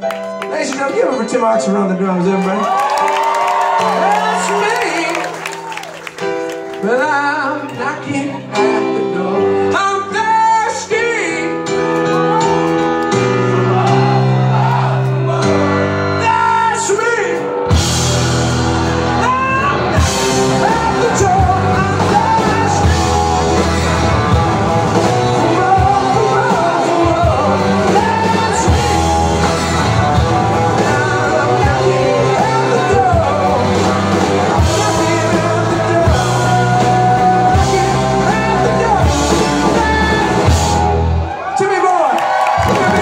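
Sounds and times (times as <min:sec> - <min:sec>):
live rock band playing: 0:00.0 - 0:43.0
person singing: 0:03.8 - 0:05.7, 0:06.7 - 0:17.5, 0:19.1 - 0:40.8.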